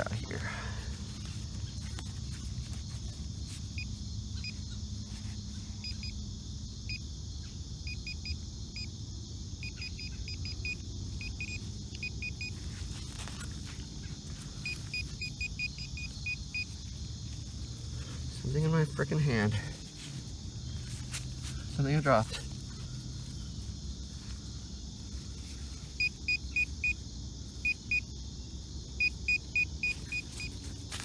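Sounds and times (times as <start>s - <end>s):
metal detector beeps: 3.8s - 4.6s, 5.8s - 6.2s, 7.9s - 8.9s, 9.6s - 12.6s, 14.6s - 16.8s, 26.0s - 27.0s, 27.6s - 28.1s, 29.0s - 30.5s.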